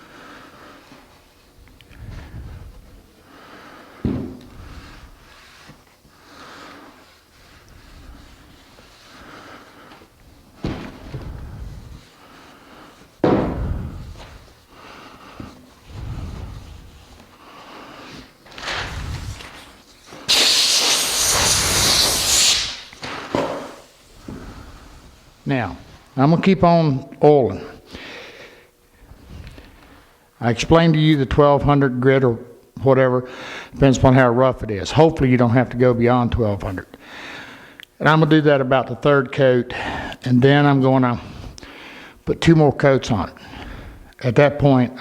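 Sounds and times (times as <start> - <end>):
shuffling noises: 4.4 - 20.3
cloth rag rubbing wood: 5.3 - 13.2, 13.9 - 20.0
low thud: 13.2 - 14.1
loud hiss: 18.6 - 25.5.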